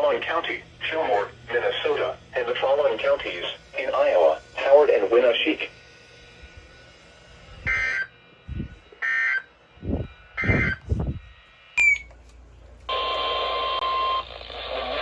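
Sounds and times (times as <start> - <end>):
radio static hiss: 0.0 - 5.8, 12.9 - 15.0.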